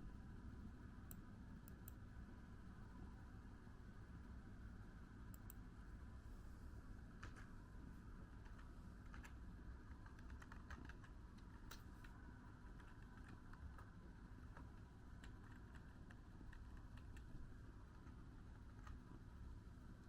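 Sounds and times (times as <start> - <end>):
low steady hum: 0.0 - 20.0
faint light clicks: 5.3 - 5.6.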